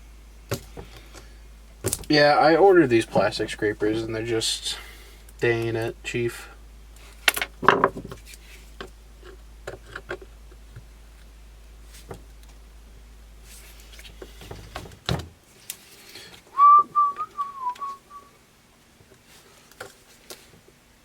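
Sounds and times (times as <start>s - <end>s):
man whistling a tune: 16.5s - 18.3s.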